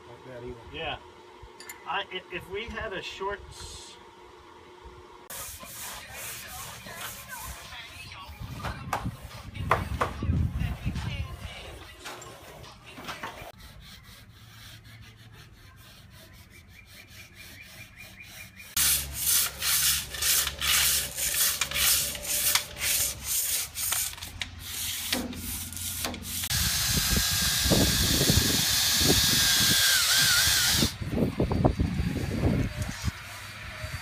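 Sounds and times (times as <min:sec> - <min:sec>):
rhythmic sanding strokes: 0:05.2 - 0:34.0
steady sanding hiss: 0:05.3 - 0:08.1, 0:18.7 - 0:31.0.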